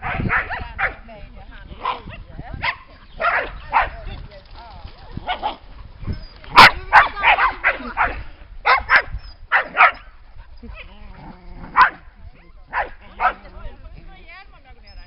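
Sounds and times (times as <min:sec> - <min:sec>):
dog barking: 0:00.0 - 0:01.0, 0:01.8 - 0:04.0, 0:06.5 - 0:10.1, 0:11.7 - 0:12.0, 0:12.7 - 0:13.5.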